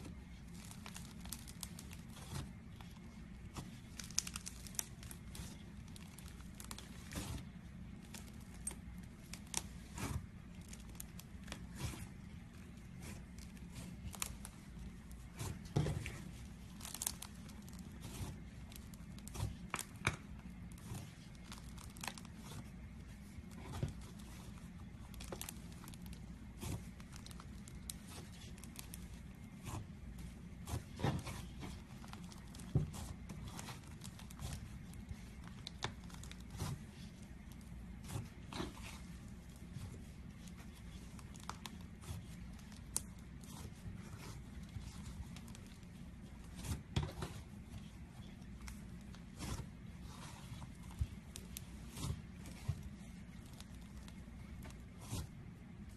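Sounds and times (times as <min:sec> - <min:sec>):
steady low hum: 0:00.0 - 0:55.9
slime crackling and popping: 0:00.1 - 0:55.9.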